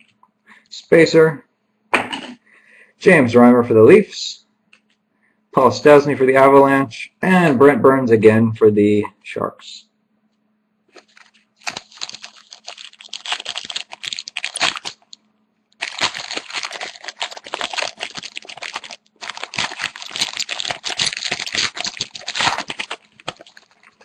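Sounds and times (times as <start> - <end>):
foil wrapper tearing and crinkling: 10.9 - 15.2, 15.8 - 24.0.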